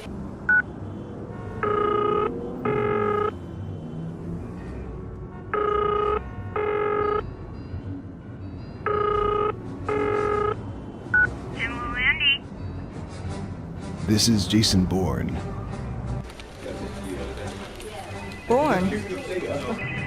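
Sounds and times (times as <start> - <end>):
telephone ringing: 1.6 - 3.3, 5.5 - 7.2, 8.8 - 10.6.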